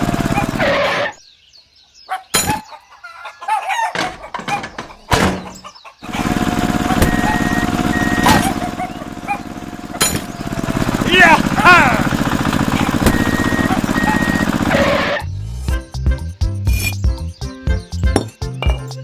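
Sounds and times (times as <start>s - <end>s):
small motor running: 0.0s - 1.0s, 6.1s - 15.2s
short chirping calls: 6.9s - 9.6s.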